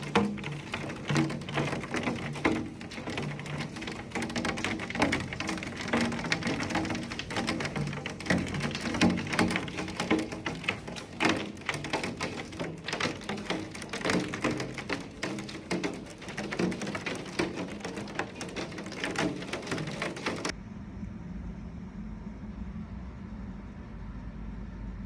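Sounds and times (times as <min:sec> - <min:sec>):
hail and heavy rain pelting: 0:00.0 - 0:20.6
steady low rumble: 0:20.5 - 0:25.0.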